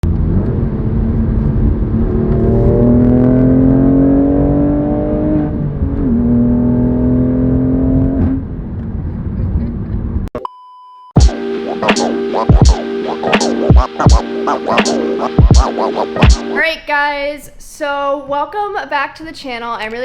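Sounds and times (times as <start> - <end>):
car engine accelerating hard: 0.0 - 8.6.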